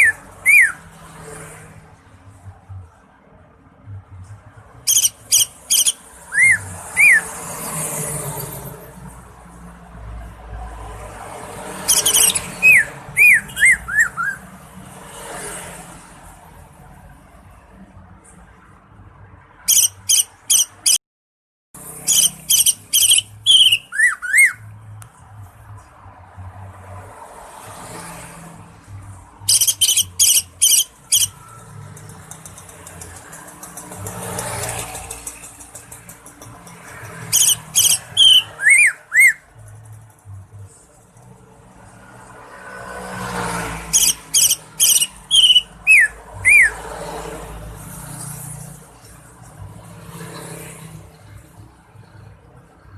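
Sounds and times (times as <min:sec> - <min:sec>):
rapid high ticking bird notes: 0:04.8 - 0:07.3, 0:11.8 - 0:14.4, 0:21.9 - 0:24.7, 0:29.4 - 0:40.1, 0:43.9 - 0:46.8
bird down-slurred whistles: 0:04.9 - 0:07.3, 0:22.2 - 0:24.6, 0:37.4 - 0:39.4, 0:44.0 - 0:46.8
bird rattling chatter: 0:29.6 - 0:38.0.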